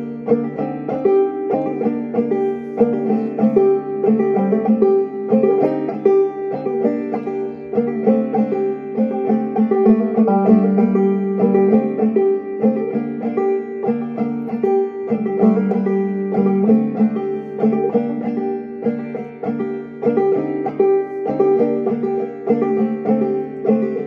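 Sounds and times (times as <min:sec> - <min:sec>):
banjo tune: 0:00.0 - 0:24.0.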